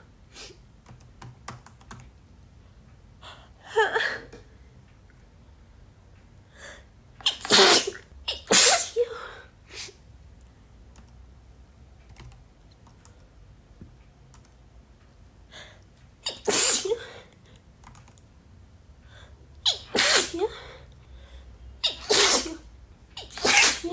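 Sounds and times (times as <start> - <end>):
faint keyboard typing clicks: 0.8 - 2.3, 10.4 - 11.2, 12.0 - 14.7, 17.5 - 18.3
woman sneezing: 7.2 - 9.2, 16.3 - 17.2, 19.7 - 20.8, 21.8 - 22.6, 23.2 - 23.9.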